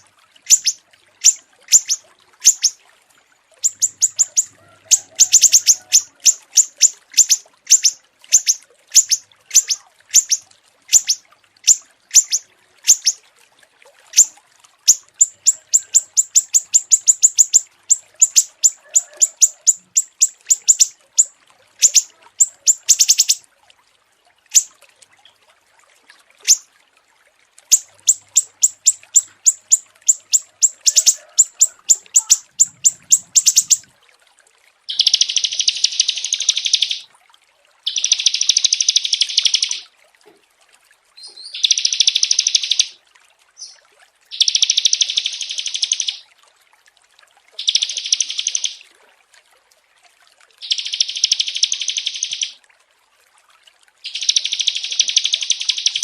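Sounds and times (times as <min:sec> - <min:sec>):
songbirds chirping: 0:00.0 - 0:02.8, 0:03.6 - 0:13.2, 0:14.9 - 0:23.4, 0:27.7 - 0:33.9, 0:34.9 - 0:37.0, 0:37.9 - 0:39.8, 0:47.6 - 0:48.8, 0:50.6 - 0:52.6, 0:54.1 - 0:56.0
buzzing bird trills: 0:03.6 - 0:13.2, 0:27.7 - 0:33.8.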